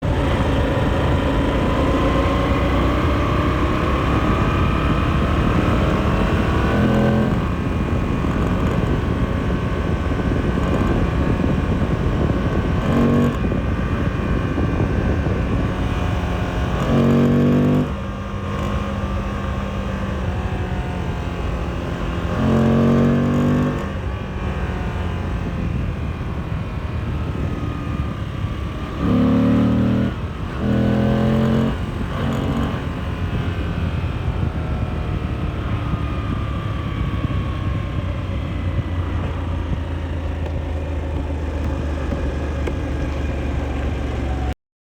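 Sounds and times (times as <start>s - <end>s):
motorcycle engine accelerating: 0.0s - 44.6s
wind rush: 0.1s - 19.7s.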